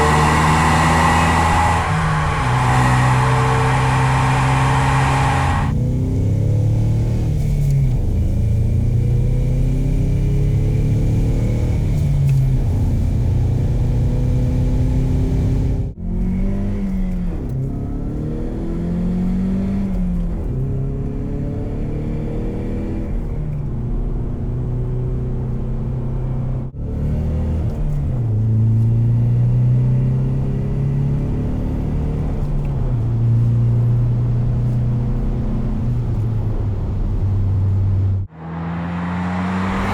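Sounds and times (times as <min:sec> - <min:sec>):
car engine revving: 0:00.0 - 0:23.2, 0:36.8 - 0:39.9.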